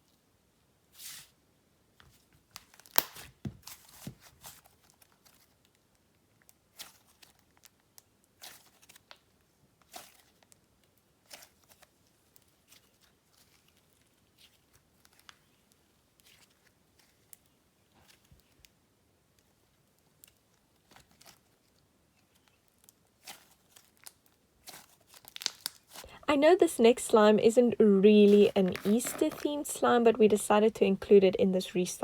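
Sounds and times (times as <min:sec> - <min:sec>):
slime squeezed with sticky pops: 0:02.8 - 0:04.3, 0:24.6 - 0:26.1.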